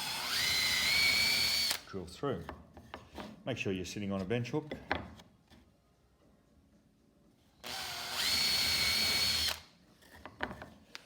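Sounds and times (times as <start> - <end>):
power drill whining: 0.0 - 1.9, 7.6 - 9.6.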